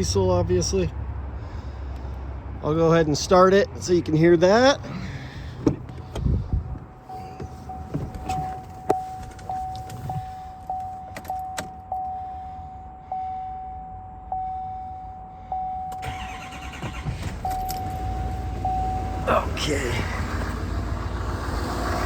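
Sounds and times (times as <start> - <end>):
truck warning chime: 6.7 - 20.7
diesel engine cranking and starting: 15.9 - 22.0.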